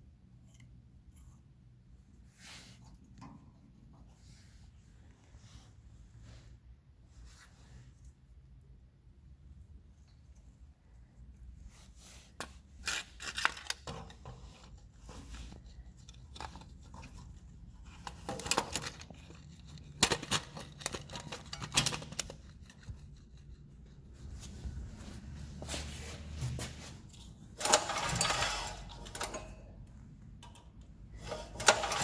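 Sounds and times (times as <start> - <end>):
handling scrapes and clicks: 11.6 - 32.0.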